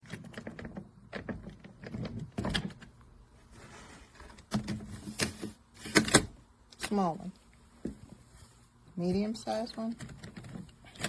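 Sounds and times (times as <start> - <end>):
suitcase plastic clicks and clunks: 9.9 - 11.0.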